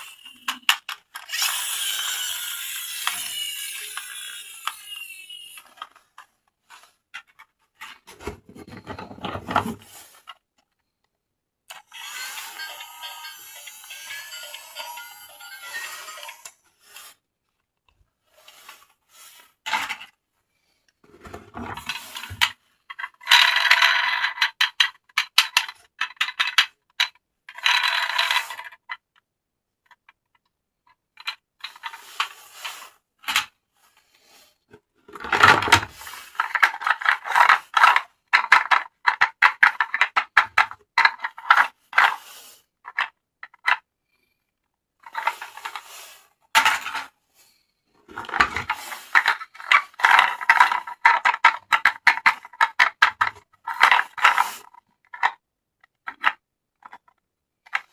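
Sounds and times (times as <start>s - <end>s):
plastic toy parts clicking and rattling: 0.0s - 10.9s, 21.2s - 33.6s, 35.1s - 43.9s, 45.0s - 46.0s, 46.6s - 47.1s, 48.1s - 57.9s.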